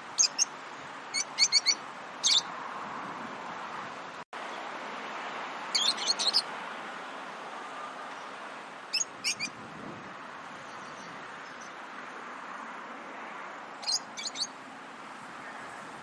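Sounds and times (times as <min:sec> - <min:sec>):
birds chirping: 0:00.0 - 0:02.6, 0:05.7 - 0:06.5, 0:08.1 - 0:09.6, 0:10.5 - 0:12.1, 0:13.7 - 0:14.7.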